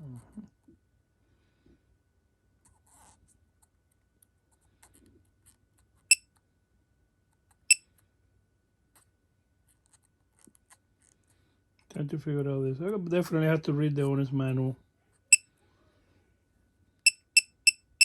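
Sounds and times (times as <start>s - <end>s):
short high-pitched beeps: 17.1s - 18.0s.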